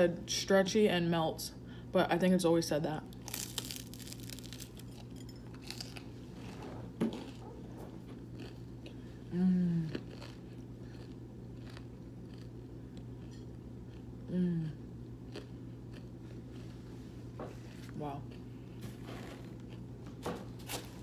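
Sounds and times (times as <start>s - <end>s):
steady low hum: 0.0s - 21.0s
chewing and mouth sounds: 3.1s - 14.2s, 15.3s - 16.7s.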